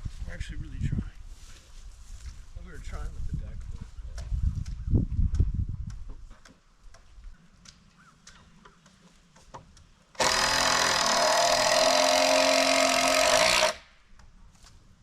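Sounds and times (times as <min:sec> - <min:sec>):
handheld power tool running: 0:10.2 - 0:13.8.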